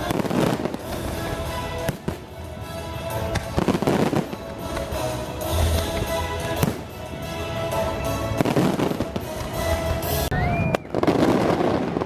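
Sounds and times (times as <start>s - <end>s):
fireworks bangs: 0.0s - 12.0s
music playing: 0.0s - 12.0s
rising firework whistle: 10.0s - 12.0s.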